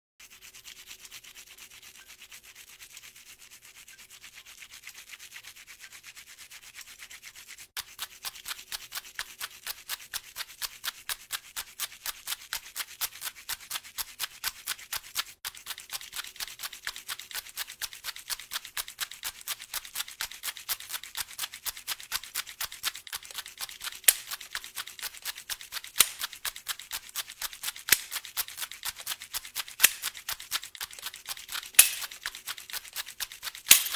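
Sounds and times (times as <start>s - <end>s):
rhythmic scraping strokes: 6.3s - 33.9s.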